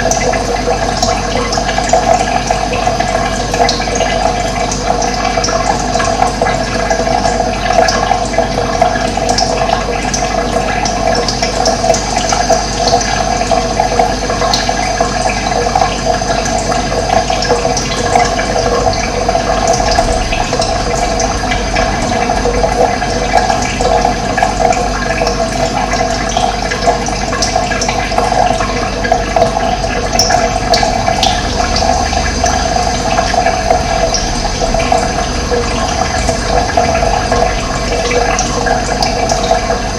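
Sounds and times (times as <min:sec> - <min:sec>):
rushing running water: 0:00.0 - 0:39.9.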